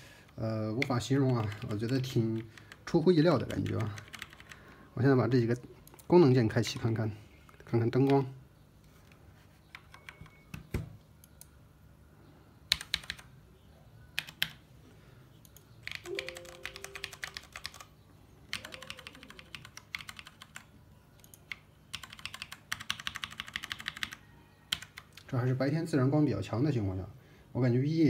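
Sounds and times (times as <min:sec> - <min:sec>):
mechanical keyboard keys clicking: 0:03.4 - 0:04.6, 0:12.7 - 0:13.3, 0:15.8 - 0:17.9, 0:18.5 - 0:20.6, 0:21.2 - 0:25.3.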